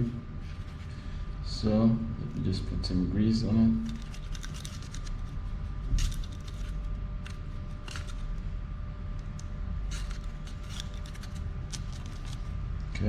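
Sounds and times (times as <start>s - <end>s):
steady low hum: 0.0s - 13.0s
clicks and scrapes of bicycle parts: 3.8s - 5.4s, 6.0s - 8.4s, 9.3s - 12.5s.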